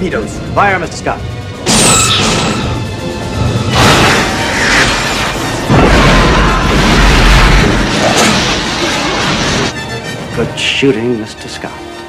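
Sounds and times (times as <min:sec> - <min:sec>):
film score music: 0:00.0 - 0:12.0
explosions: 0:03.7 - 0:09.7.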